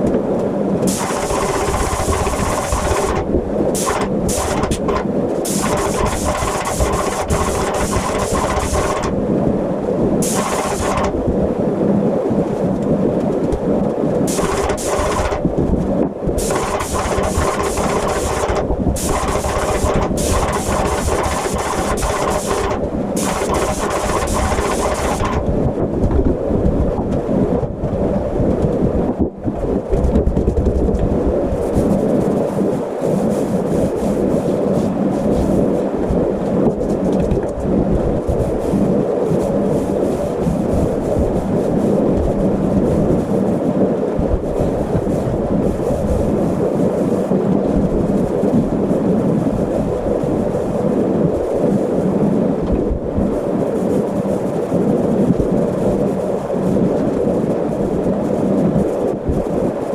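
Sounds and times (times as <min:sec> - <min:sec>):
spray gun hissing: 0:00.9 - 0:03.2, 0:03.8 - 0:09.1, 0:10.2 - 0:11.2, 0:14.3 - 0:15.4, 0:16.4 - 0:25.4
paint sprayer running: 0:00.9 - 0:09.2, 0:10.2 - 0:11.2, 0:14.3 - 0:15.5, 0:16.4 - 0:25.5.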